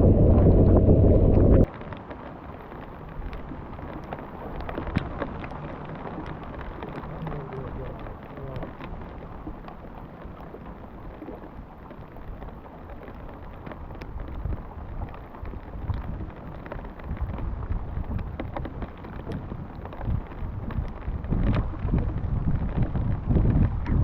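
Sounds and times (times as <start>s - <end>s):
rain pattering: 0.0s - 24.0s
sharp raindrop hits: 0.0s - 24.0s
wind buffeting microphone: 0.0s - 24.0s.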